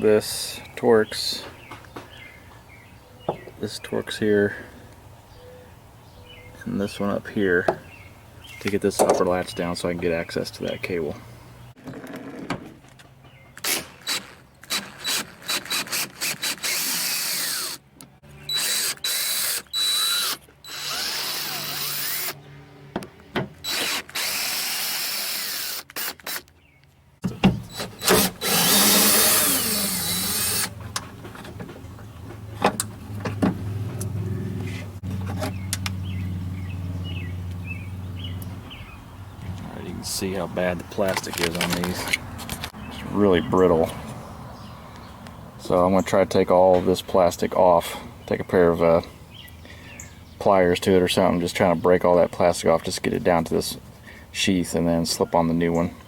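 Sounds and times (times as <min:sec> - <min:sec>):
power drill removing screws: 0:13.6 - 0:17.8, 0:18.5 - 0:22.4, 0:23.6 - 0:26.6, 0:27.2 - 0:30.8.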